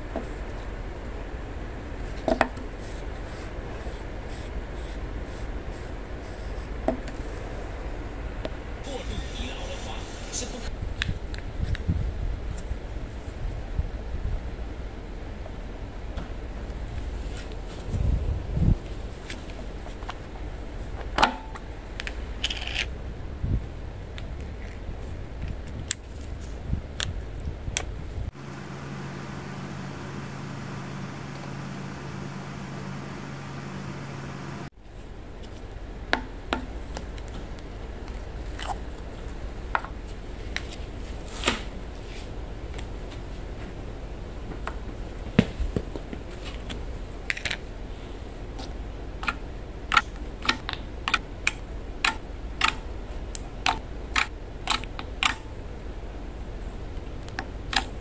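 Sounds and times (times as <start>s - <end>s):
low rumble: 0.0s - 28.3s
white-noise hiss: 0.0s - 58.0s.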